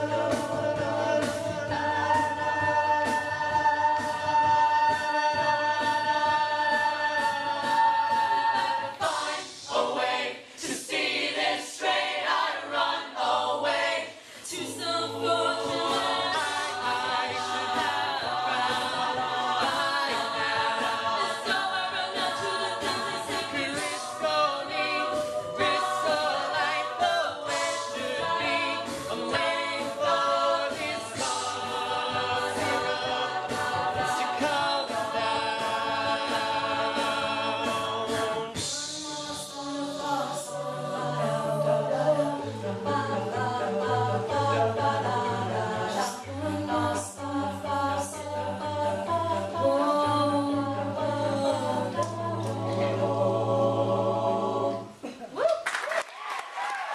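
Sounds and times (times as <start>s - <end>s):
vocal group singing in harmony: 0.0s - 55.3s.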